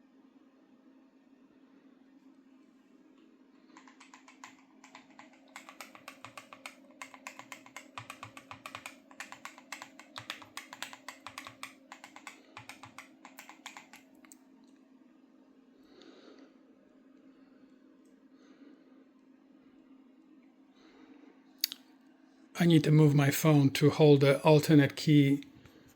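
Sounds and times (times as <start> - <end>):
mechanical keyboard typing: 3.8 - 14.1.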